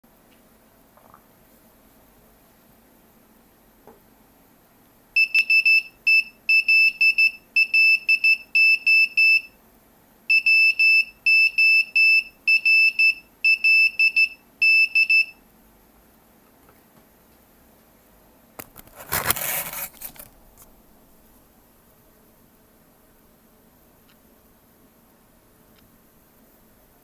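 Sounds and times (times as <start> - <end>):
morse code beeps: 5.2 - 9.6, 10.3 - 15.4.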